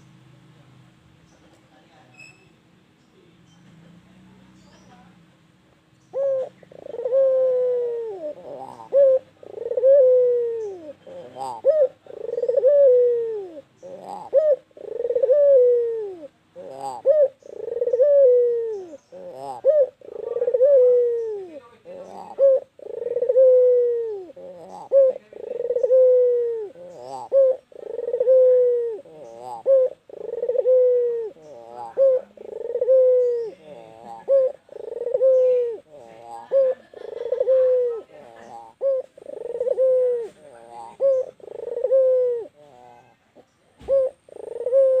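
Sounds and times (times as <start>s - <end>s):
dove cooing: 6.1s - 45.0s.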